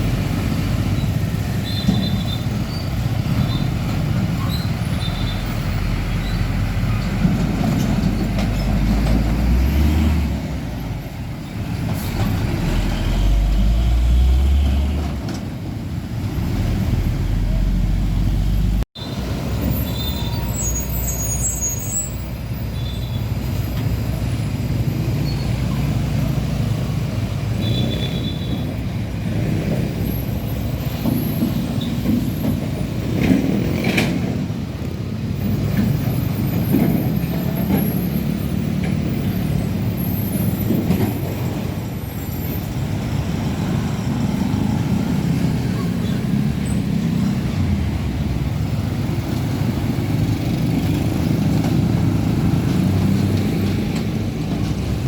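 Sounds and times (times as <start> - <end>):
diesel truck engine rumble: 0.0 - 55.0.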